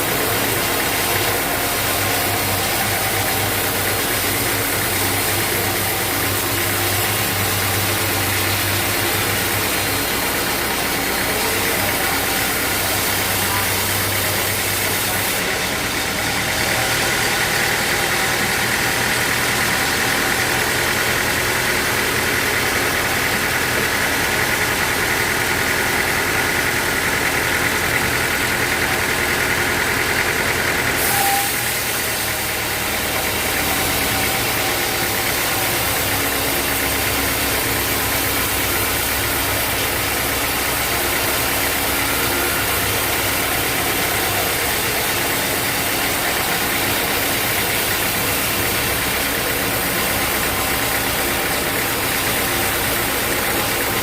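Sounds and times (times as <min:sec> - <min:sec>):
sawmill machinery running: 0:00.0 - 0:54.0.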